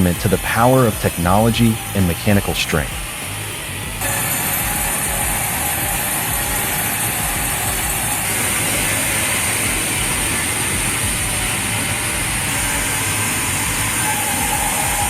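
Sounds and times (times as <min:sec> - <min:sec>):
constant high machine whine: 0:00.0 - 0:15.0
sawmill machinery din: 0:00.0 - 0:15.0.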